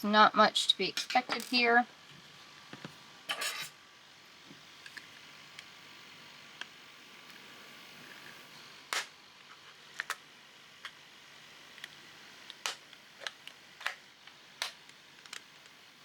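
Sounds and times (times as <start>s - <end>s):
plastic clicks and snaps: 11.8s - 15.8s.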